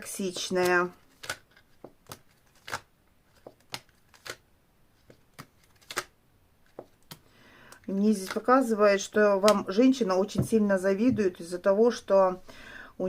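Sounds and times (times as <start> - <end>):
cards snapping and tapping on table: 1.2 - 2.8.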